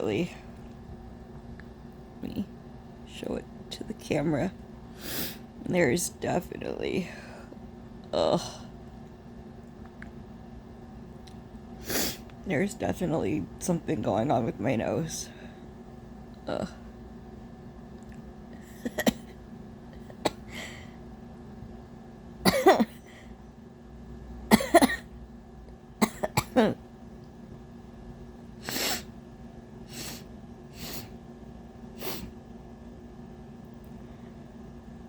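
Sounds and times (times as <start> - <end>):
woman coughing: 18.7 - 19.4, 20.0 - 20.7, 22.4 - 23.1, 24.5 - 25.1, 26.0 - 26.8.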